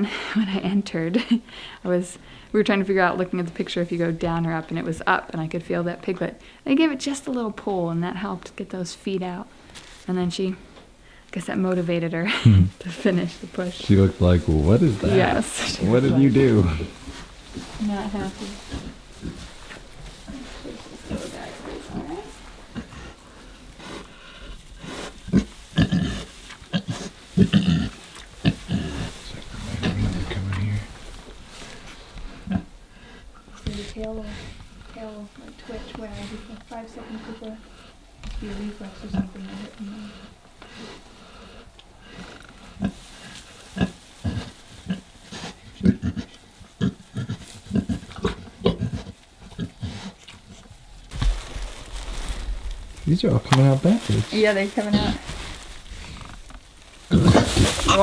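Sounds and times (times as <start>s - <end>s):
sow grunting: 13.9s - 17.0s, 25.3s - 31.0s, 54.1s - 55.4s, 57.1s - 58.0s
pigs grunting: 24.8s - 31.1s, 43.8s - 50.2s, 54.9s - 56.3s, 57.1s - 58.0s.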